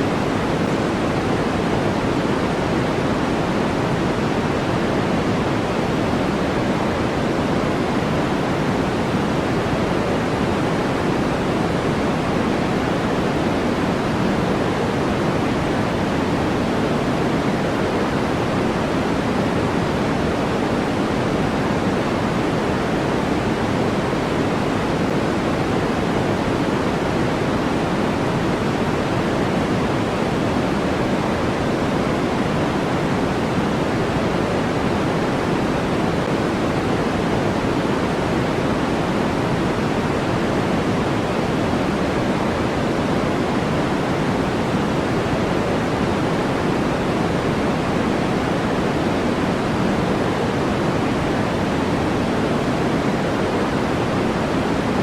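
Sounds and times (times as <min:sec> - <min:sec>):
steady white noise hiss: 0:00.0 - 0:55.0.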